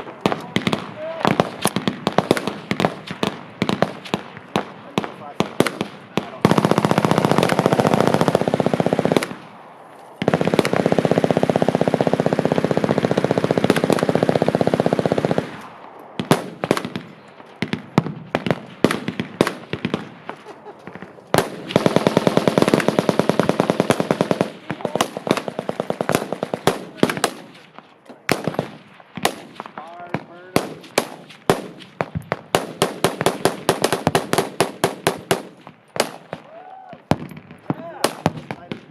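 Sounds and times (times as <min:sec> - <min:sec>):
machine guns firing full-auto: 0:00.0 - 0:09.6, 0:10.2 - 0:36.4, 0:37.1 - 0:38.9
single gunshots: 0:24.6 - 0:36.5, 0:37.1 - 0:38.9.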